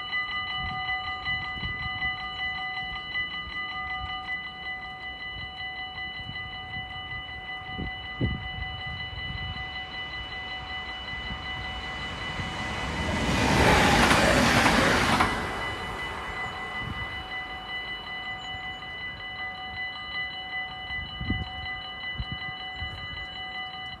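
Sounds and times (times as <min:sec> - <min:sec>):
level-crossing warning bell ringing: 0:00.0 - 0:24.0
train rushing past: 0:08.3 - 0:18.8.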